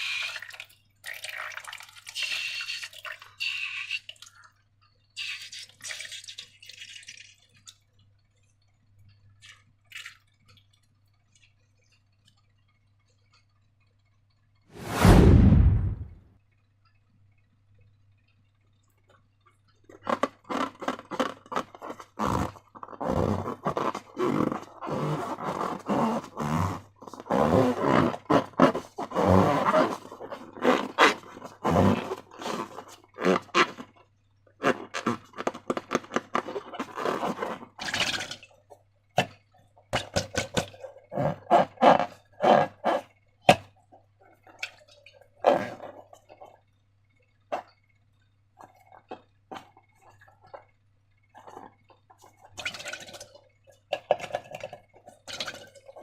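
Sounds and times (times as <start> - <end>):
rubber squeaks: 20.1 - 33.9, 34.6 - 37.8, 45.4 - 46.0.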